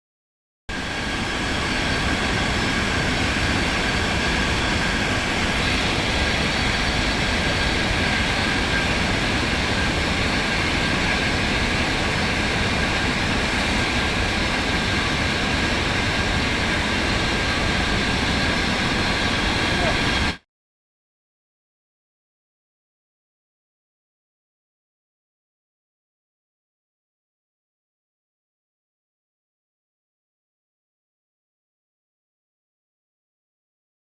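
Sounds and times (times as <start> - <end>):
welding hiss with high whine: 0.7 - 20.4.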